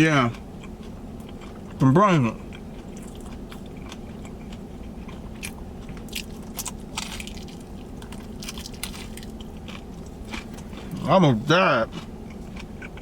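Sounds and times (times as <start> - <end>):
steady low hum: 0.0 - 13.0
crunchy chewing and biting: 0.2 - 13.0.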